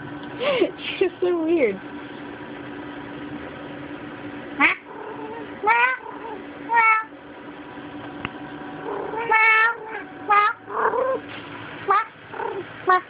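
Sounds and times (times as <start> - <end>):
cat meowing: 4.6 - 7.1, 8.9 - 11.2.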